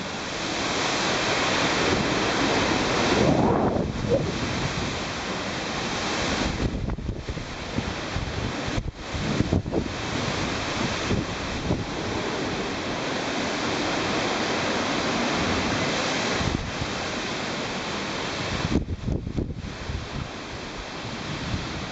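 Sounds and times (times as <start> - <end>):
heavy surf breaking: 0.0 - 21.9
wind buffeting microphone: 1.7 - 12.6, 18.4 - 21.9.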